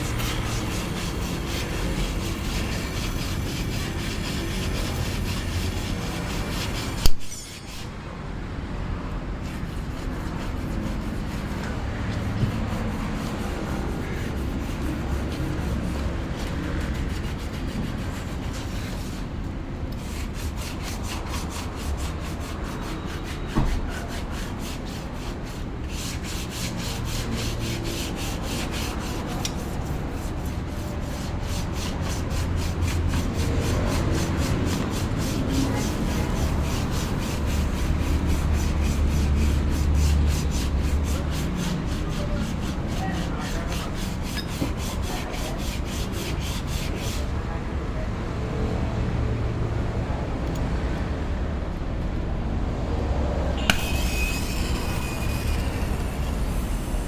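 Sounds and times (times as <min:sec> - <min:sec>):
sanding strokes: 0:00.0 - 0:08.0, 0:09.3 - 0:47.4, 0:53.5 - 0:57.0
sharp knock: 0:53.6 - 0:54.9.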